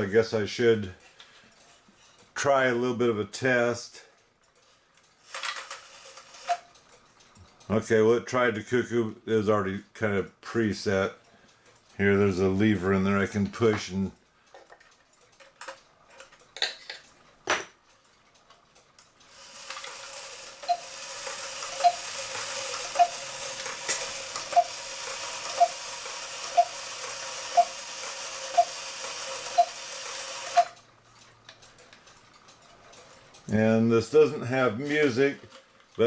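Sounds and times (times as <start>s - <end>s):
clock mechanism whirring: 3.6s - 8.5s, 17.9s - 36.0s
clock strike clicks: 19.2s - 30.9s
clock lever clicks: 20.6s - 30.8s.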